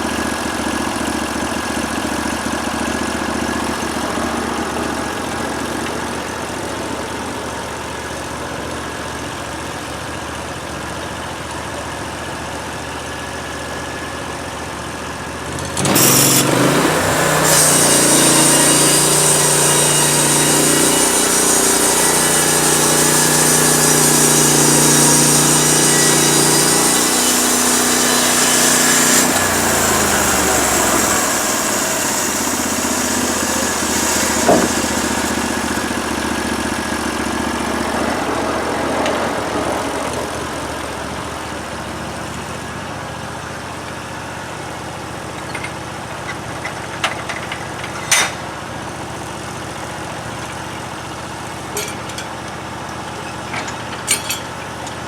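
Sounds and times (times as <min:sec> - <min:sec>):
sawmill engine running: 0:00.0 - 0:55.0.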